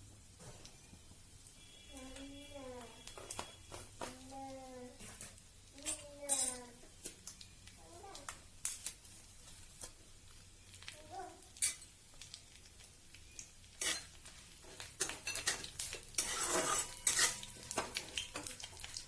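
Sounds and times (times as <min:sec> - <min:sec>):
spices sizzling in hot oil: 0:00.0 - 0:19.0
metal spoon scraping in pan: 0:13.7 - 0:19.0.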